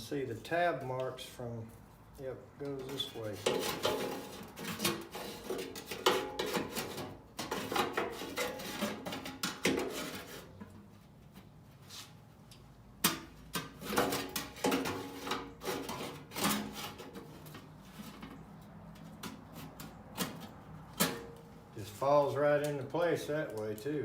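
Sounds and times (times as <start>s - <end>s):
sheet metal scraping: 2.8s - 10.7s, 13.6s - 18.5s.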